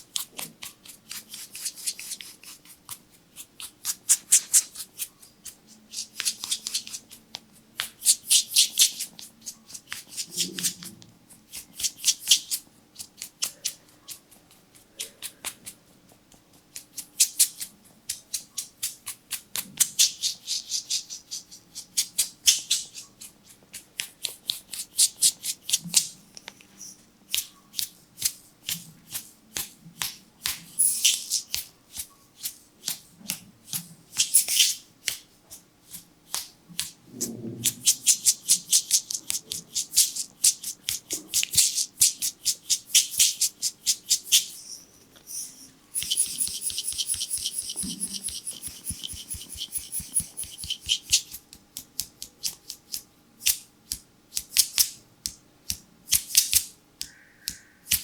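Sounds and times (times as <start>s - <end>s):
scissors snipping: 46.0s - 56.3s.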